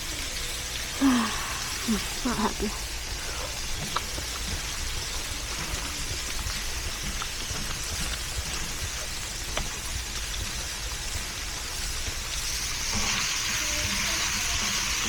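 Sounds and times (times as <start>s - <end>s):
meat sizzling in a frying pan: 0.0s - 15.0s.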